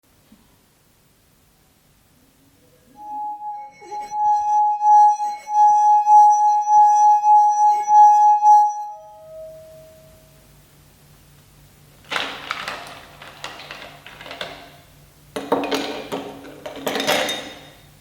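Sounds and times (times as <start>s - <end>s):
singing glass ringing tone: 2.9s - 10.4s.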